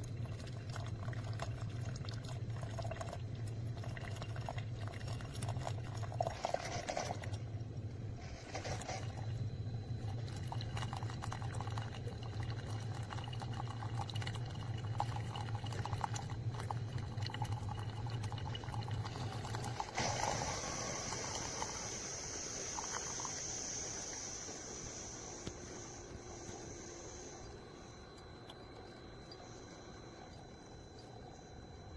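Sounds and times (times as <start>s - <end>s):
liquid pouring into cup: 0.0s - 26.2s
coffee maker pump hum: 0.0s - 31.9s
high hiss: 19.9s - 27.9s.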